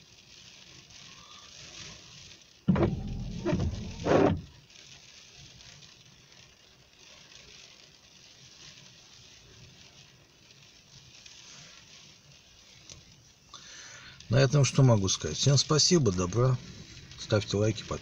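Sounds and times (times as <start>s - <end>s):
rain patter: 0.0s - 18.0s
wind: 0.0s - 18.0s.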